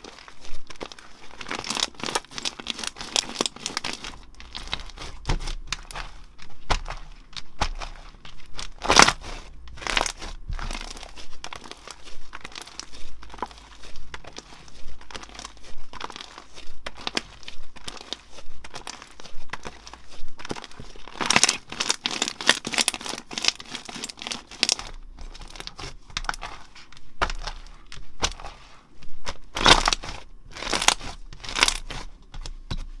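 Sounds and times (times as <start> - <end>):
slime squeezed crackling pops: 8.7 - 11.2.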